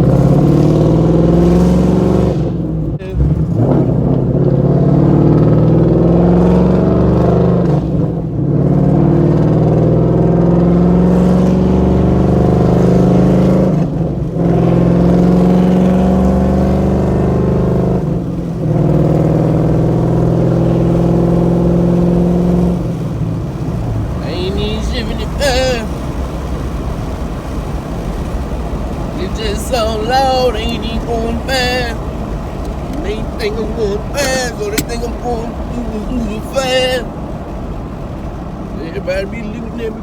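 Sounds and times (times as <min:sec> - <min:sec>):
loud car exhaust under load: 0:00.0 - 0:24.3.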